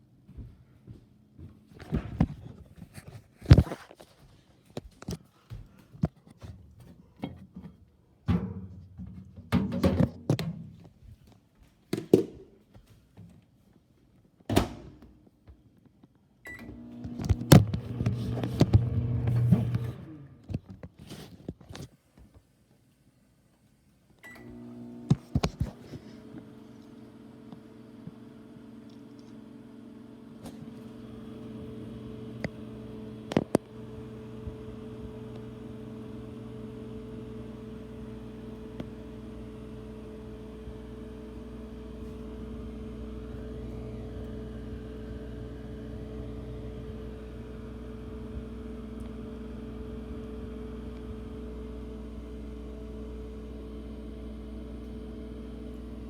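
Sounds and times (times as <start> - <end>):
microwave oven humming: 16.5 - 20.5, 24.2 - 56.0.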